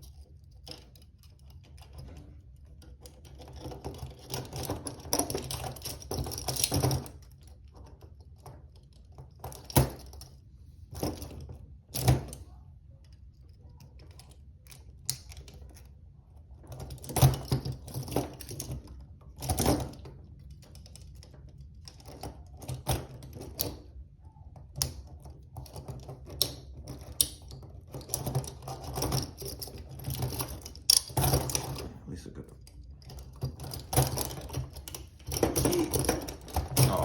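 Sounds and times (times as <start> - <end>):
handcuff chain rattling: 2.6 - 10.2, 25.2 - 31.8, 32.8 - 37.0
metal clicks of lock picking: 24.8 - 31.7.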